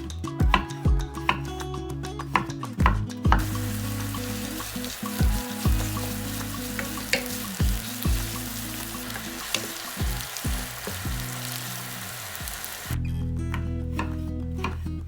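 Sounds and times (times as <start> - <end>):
food sizzling in oil: 3.4 - 13.0.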